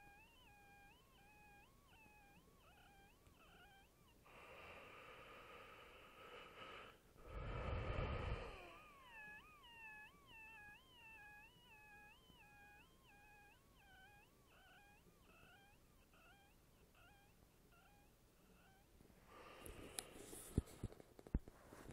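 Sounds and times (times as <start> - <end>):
whistling wheeze: 0.0 - 18.0.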